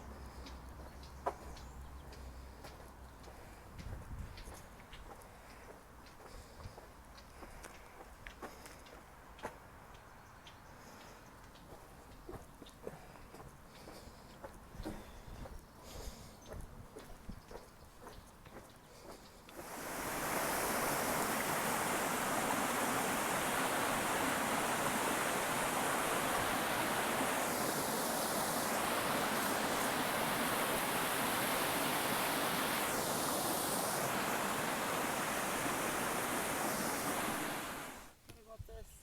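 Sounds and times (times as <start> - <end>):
torrential rain and rushing water: 19.6 - 38.2.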